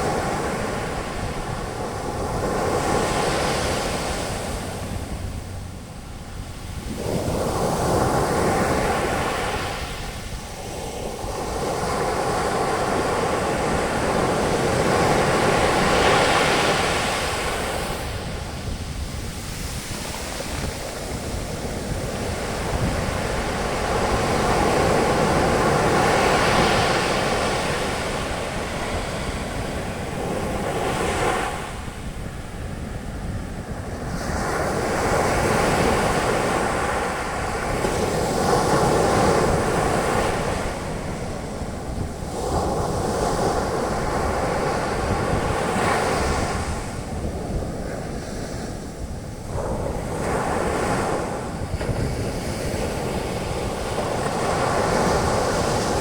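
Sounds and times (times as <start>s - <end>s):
surf washing up beach: 0.0s - 56.0s
sea waves breaking: 6.6s - 33.2s.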